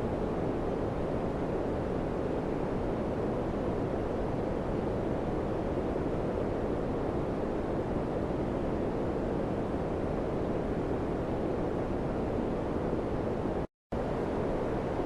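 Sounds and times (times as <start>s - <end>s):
air conditioner fan blowing: 0.0s - 15.0s.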